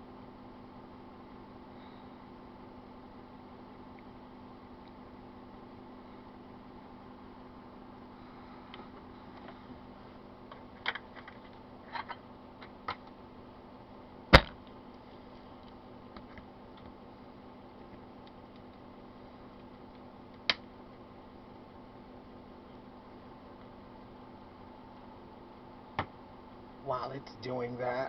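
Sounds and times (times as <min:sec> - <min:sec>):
steady low hum: 0:00.0 - 0:28.0
loud sharp crack: 0:14.3 - 0:14.6.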